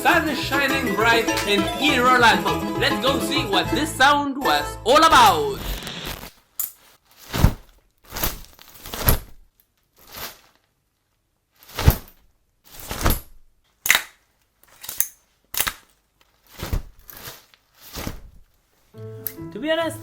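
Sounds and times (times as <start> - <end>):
umbrella snapping open and shut: 7.1 - 10.6, 11.7 - 12.2, 12.8 - 18.5.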